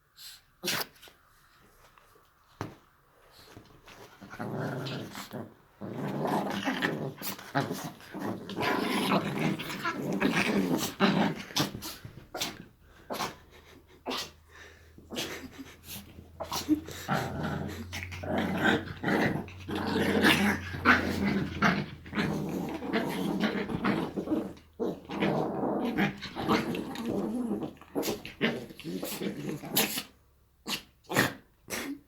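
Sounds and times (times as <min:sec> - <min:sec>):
dogs growling: 0:04.2 - 0:30.1.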